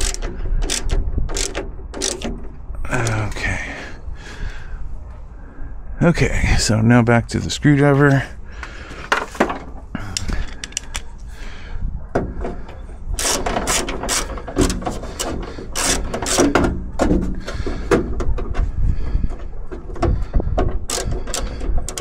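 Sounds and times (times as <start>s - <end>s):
screwdriver metallic clicks: 0.0s - 2.3s
screwdriver scraping: 0.0s - 2.3s, 13.2s - 16.6s, 20.9s - 22.0s.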